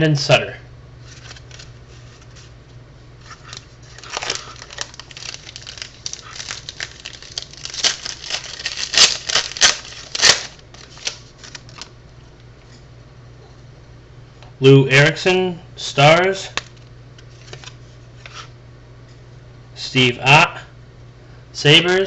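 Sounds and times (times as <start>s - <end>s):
cards being handled: 1.0s - 2.6s, 3.2s - 11.9s, 16.5s - 18.5s
wrapper crinkling and tearing: 3.2s - 12.0s.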